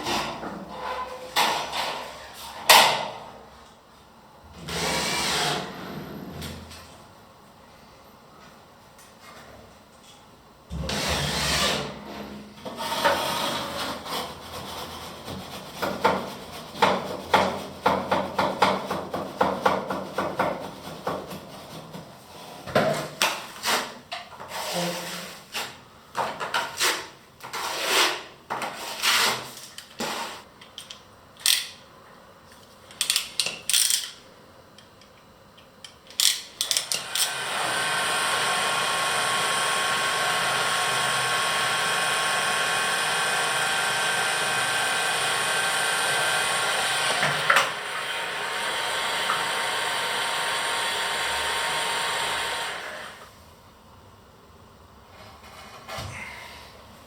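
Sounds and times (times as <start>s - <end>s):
hand tool scraping and rubbing: 4.7s - 5.8s, 10.9s - 12.0s, 23.5s - 25.8s, 26.6s - 30.5s.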